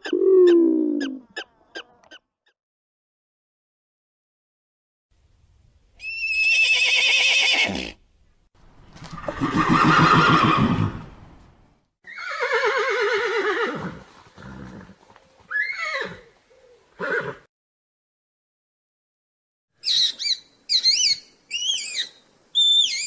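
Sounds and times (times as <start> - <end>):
horses neighing: 8.9 - 11.2, 12.1 - 16.3.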